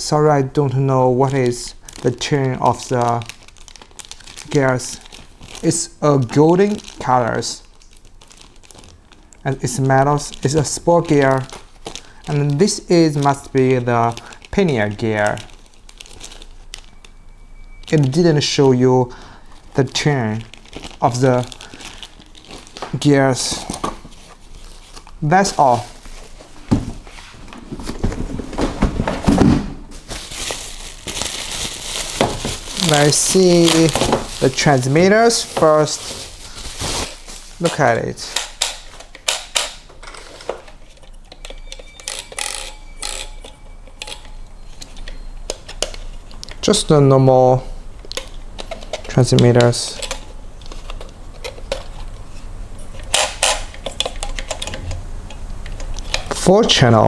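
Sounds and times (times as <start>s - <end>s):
packaging rustling and crinkling: 0.5s - 57.0s
rustling scrapes: 23.6s - 37.7s
plastic clicks and clatter: 48.0s - 52.2s, 52.9s - 56.5s.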